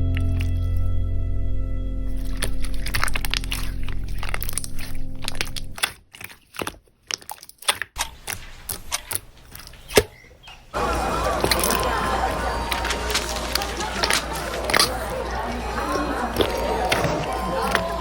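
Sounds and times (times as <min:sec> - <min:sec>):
slime crackling and popping: 0:00.0 - 0:00.8, 0:02.1 - 0:10.6, 0:11.4 - 0:18.0
background music: 0:00.0 - 0:05.4.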